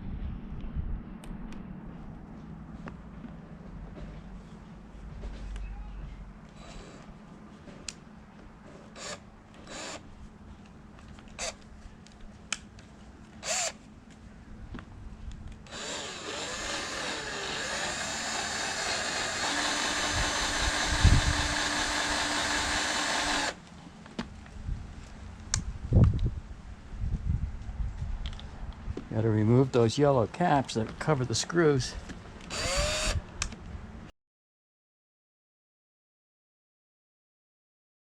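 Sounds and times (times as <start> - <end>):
power drill whine: 6.6 - 7.1, 9.0 - 10.0, 13.4 - 13.8, 15.7 - 23.6, 32.5 - 33.2.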